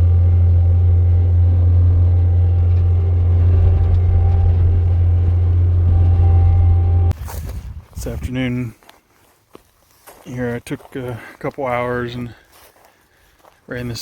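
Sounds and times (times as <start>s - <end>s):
farm machine engine droning: 0.0s - 8.3s.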